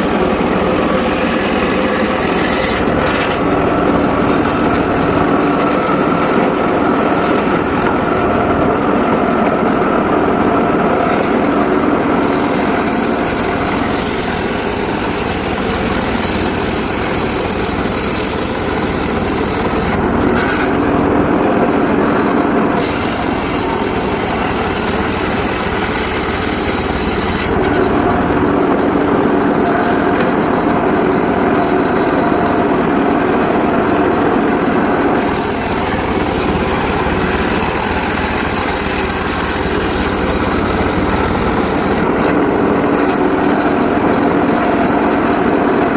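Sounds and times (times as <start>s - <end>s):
saw blade hissing through wood: 0.0s - 8.8s, 12.1s - 20.0s, 22.8s - 27.6s, 35.1s - 42.0s
circular saw humming: 0.0s - 30.9s, 34.3s - 42.2s.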